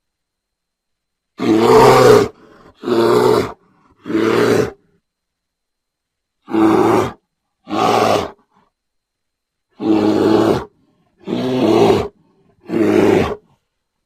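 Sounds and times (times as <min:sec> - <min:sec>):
bear roaring: 0:01.4 - 0:04.9, 0:06.4 - 0:08.6, 0:09.7 - 0:13.6.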